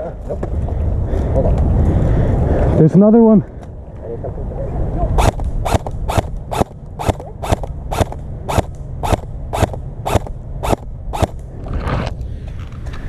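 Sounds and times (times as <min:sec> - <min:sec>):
airsoft rifle firing single shots: 0:05.2 - 0:11.4.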